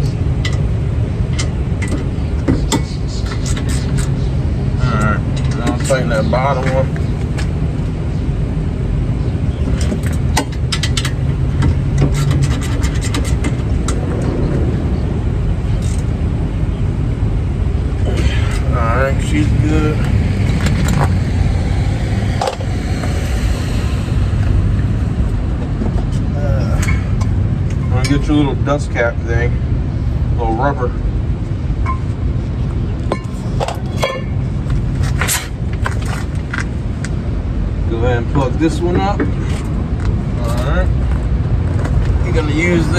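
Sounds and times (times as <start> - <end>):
steady low rumble: 0.0 - 42.9
metal tools clinking: 33.0 - 36.6.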